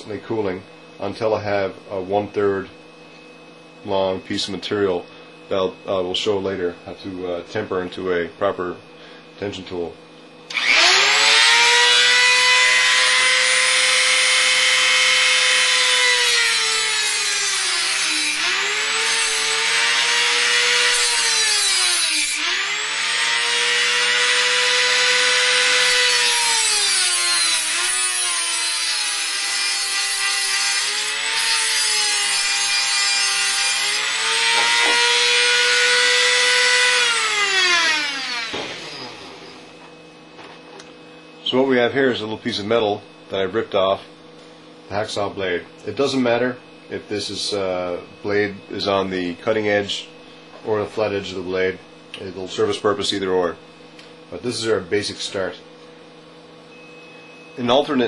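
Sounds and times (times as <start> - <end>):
rotary tool grinding metal: 10.5 - 39.6.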